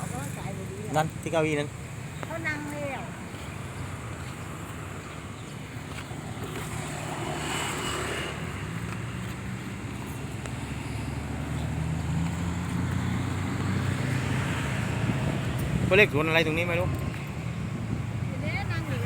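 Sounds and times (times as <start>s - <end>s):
wind noise: 12.0s - 19.0s.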